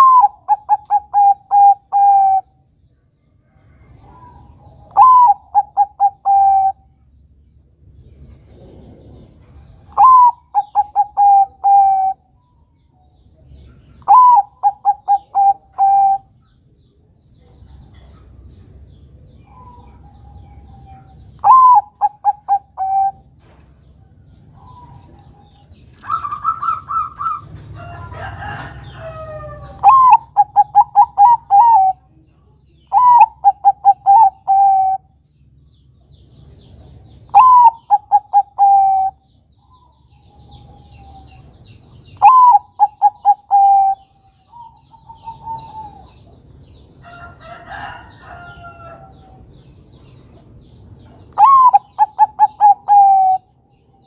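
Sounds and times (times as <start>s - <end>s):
dove cooing: 0.0s - 2.6s, 4.0s - 6.9s, 8.5s - 12.2s, 14.0s - 16.4s, 19.4s - 23.3s, 24.6s - 32.1s, 32.9s - 35.1s, 37.3s - 41.5s, 42.2s - 46.3s, 51.3s - 53.5s
longer bird call: 0.0s - 2.8s, 3.5s - 7.0s, 8.6s - 12.8s, 13.5s - 16.6s, 19.3s - 23.6s, 24.5s - 35.2s, 36.5s - 49.7s, 51.3s - 54.0s.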